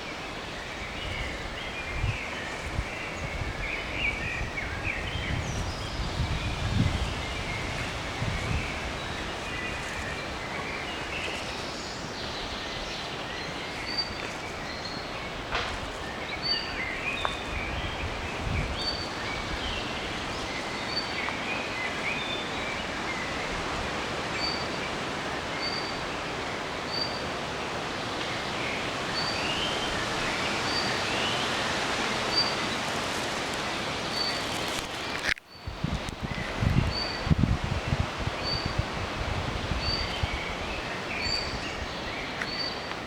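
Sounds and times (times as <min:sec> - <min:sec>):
small birds chirping: 0:00.0 - 0:23.6, 0:28.1 - 0:37.4
wind rustling leaves: 0:00.0 - 0:43.0.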